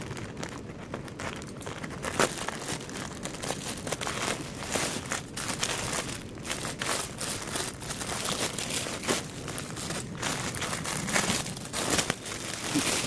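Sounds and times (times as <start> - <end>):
plastic packaging crinkling: 0.0 - 13.0.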